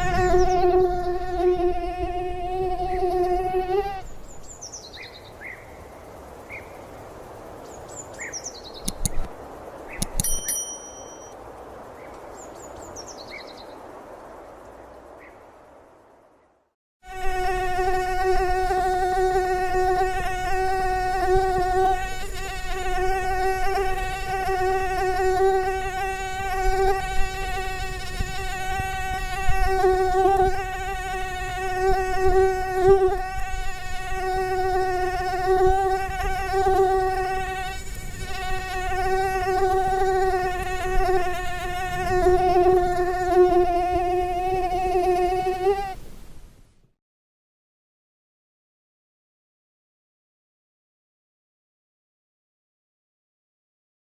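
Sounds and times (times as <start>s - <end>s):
mosquito whining in flight: 0.0s - 4.0s.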